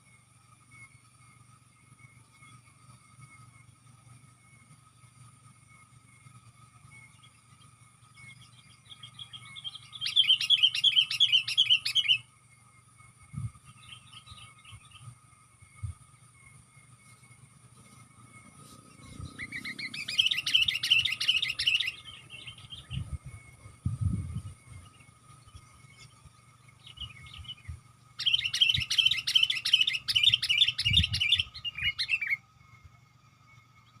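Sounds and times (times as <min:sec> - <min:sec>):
bird chirping rapidly: 0:06.8 - 0:12.3, 0:13.2 - 0:16.2, 0:17.4 - 0:32.5.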